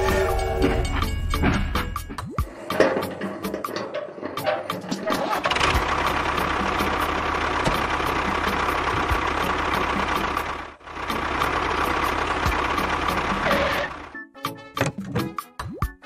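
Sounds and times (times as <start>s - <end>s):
motor running roughly: 5.5s - 14.1s.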